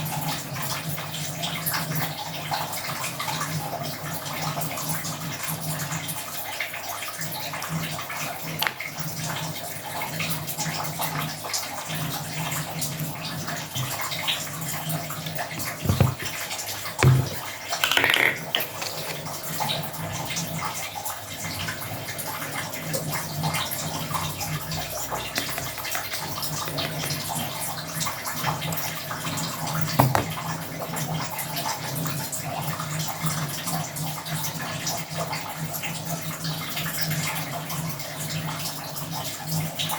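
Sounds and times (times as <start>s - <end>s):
running water rushing: 12.8s - 17.6s, 22.0s - 30.6s
short knocks or splashes: 15.6s - 16.4s, 17.0s - 17.5s, 30.0s - 30.5s.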